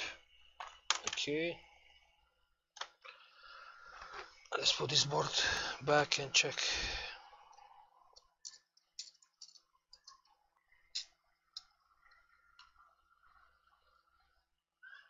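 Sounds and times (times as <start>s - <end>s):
small parts clicking and tapping: 0.6s - 1.3s, 7.5s - 12.9s.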